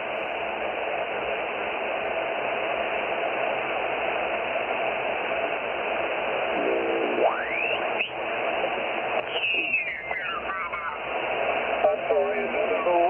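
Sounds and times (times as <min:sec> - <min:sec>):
radio band noise hiss: 0:00.0 - 0:13.0
whistle sweeping upward: 0:07.3 - 0:08.1.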